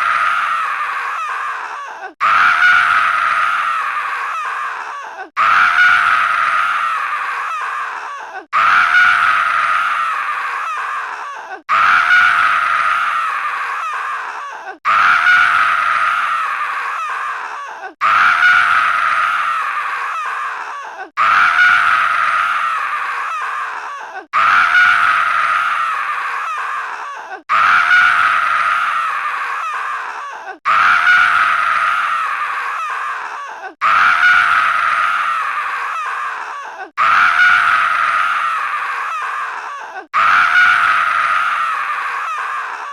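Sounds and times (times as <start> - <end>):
long scream-like cry: 0.0 - 42.9.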